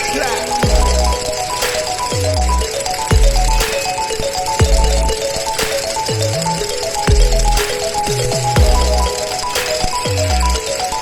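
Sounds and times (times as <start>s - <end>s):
melodic line of short notes: 0.0s - 11.0s
deep bass hits: 0.6s - 1.2s, 2.2s - 3.7s, 4.6s - 5.1s, 7.1s - 7.6s, 8.3s - 9.1s.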